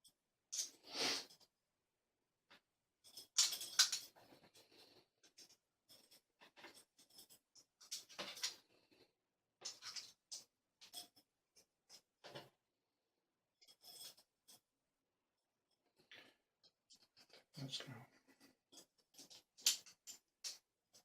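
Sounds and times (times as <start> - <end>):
lock pick scraping and clicking: 3.1 - 4.2.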